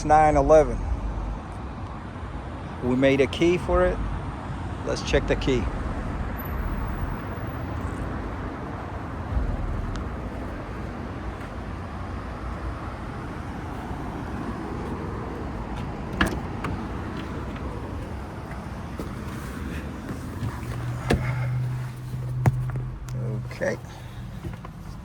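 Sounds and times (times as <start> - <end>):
low rumble: 0.0 - 1.8, 3.7 - 4.6, 5.2 - 11.7
dull thump: 14.8 - 23.1.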